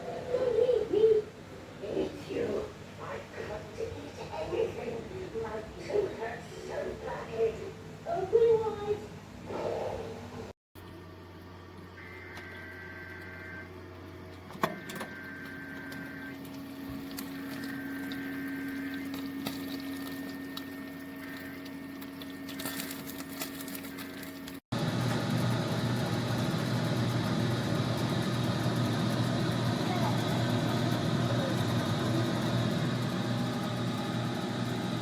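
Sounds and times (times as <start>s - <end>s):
electric motor hum: 10.8s - 35.0s.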